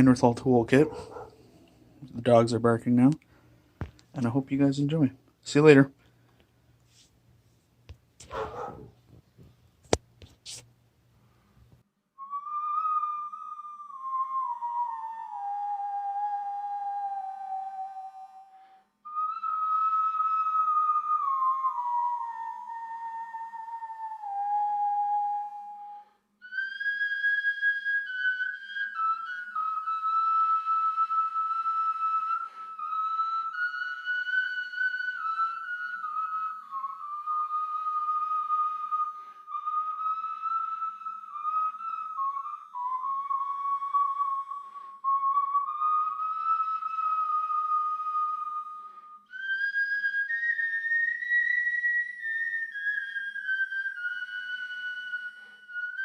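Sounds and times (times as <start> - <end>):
slow flute-like melody: 12.1 - 56.0.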